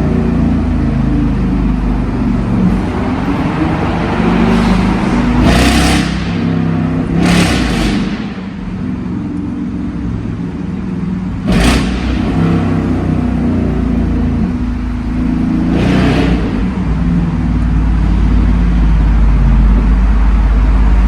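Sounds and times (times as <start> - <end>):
car engine running: 0.0 - 21.0
loud rushes of noise: 2.4 - 9.0.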